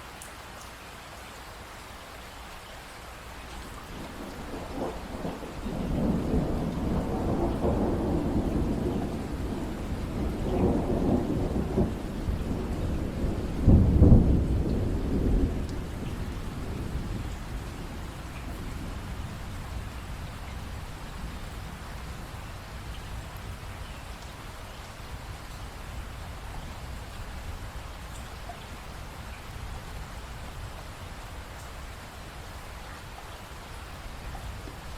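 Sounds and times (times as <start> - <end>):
steady rain: 0.0 - 34.9
rolling thunder: 3.9 - 23.6.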